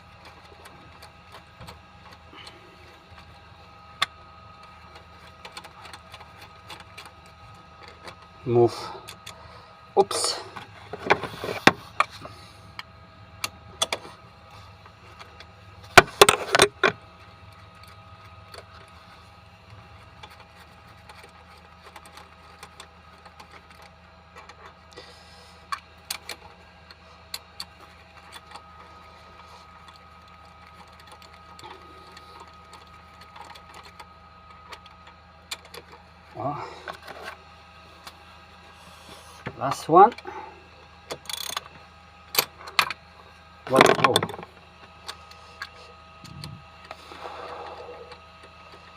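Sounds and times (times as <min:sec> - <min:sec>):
ratchet clicking: 0:41.2 - 0:41.7.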